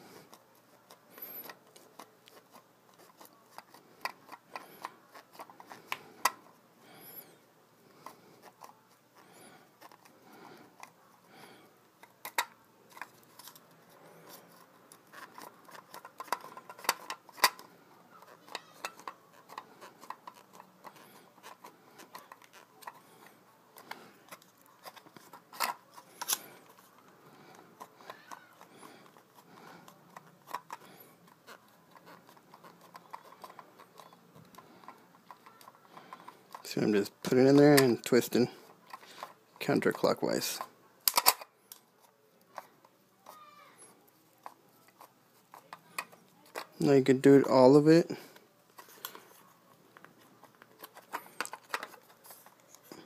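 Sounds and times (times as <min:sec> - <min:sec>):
screwdriver clicking and scraping metal: 0:12.0 - 0:26.9, 0:27.7 - 0:43.4, 0:44.3 - 0:46.9, 0:48.8 - 0:53.0.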